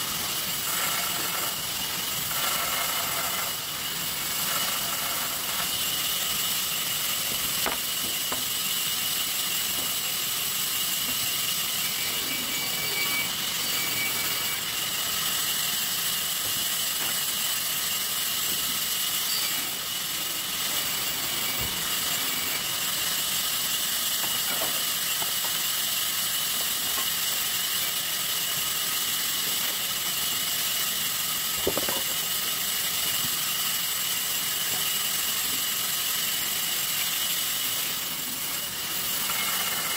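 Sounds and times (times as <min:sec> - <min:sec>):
saw machine whining: 0:00.0 - 0:39.9.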